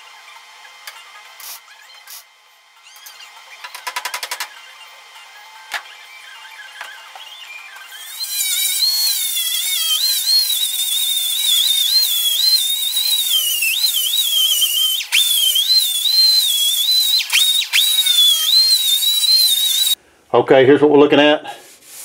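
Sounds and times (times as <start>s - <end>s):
power grinder whining on metal: 3.0s - 20.0s.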